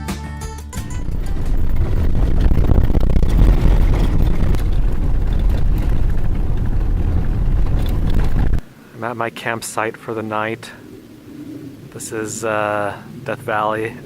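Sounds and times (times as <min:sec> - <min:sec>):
vehicle driving rumble: 0:00.8 - 0:08.7.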